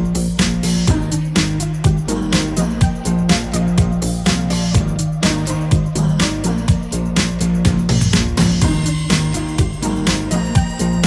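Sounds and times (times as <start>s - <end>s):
funky background music: 0.0s - 11.0s.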